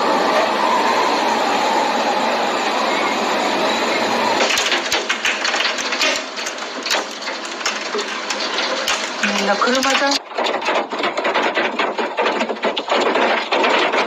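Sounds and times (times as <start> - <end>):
hailstones clattering on hard surface: 4.4 - 14.0.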